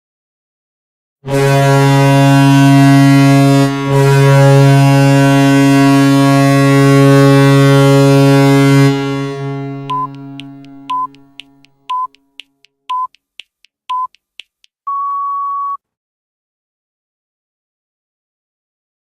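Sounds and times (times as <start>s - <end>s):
deep goal horn blast: 1.2s - 11.3s
short beep: 9.9s - 10.1s, 10.9s - 11.2s, 11.9s - 12.1s, 12.9s - 13.1s, 13.9s - 14.1s, 14.9s - 15.8s.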